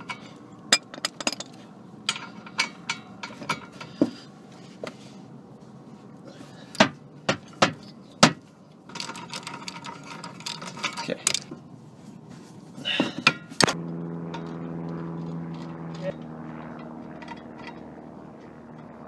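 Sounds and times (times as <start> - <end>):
metal tools clinking: 0.0 - 4.2, 8.9 - 11.6.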